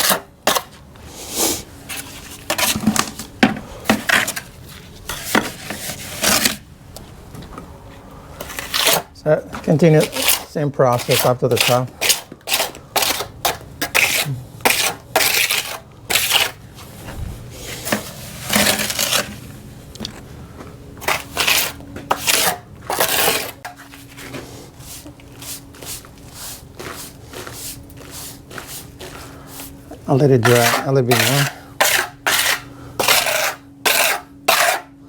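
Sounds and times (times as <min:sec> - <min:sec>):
hands rubbing and scraping cement: 0:21.0 - 0:34.8.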